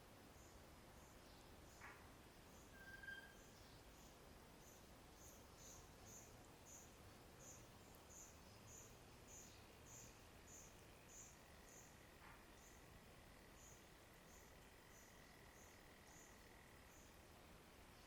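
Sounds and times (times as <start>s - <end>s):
background hiss: 0.0s - 18.0s
crickets chirping: 2.5s - 17.3s
thin high tone: 2.7s - 3.4s.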